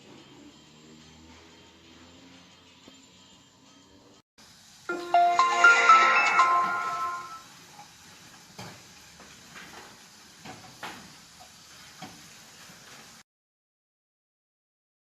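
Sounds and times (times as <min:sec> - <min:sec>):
phone startup tune: 0:04.9 - 0:07.5.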